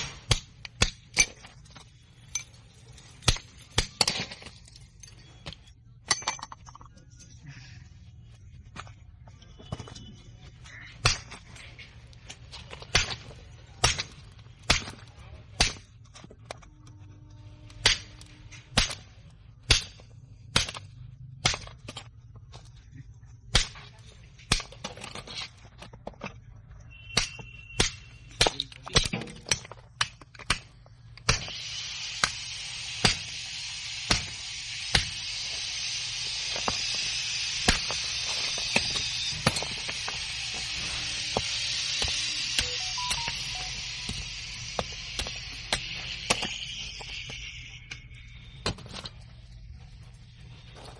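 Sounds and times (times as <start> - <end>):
steady hiss: 31.2 - 48.5.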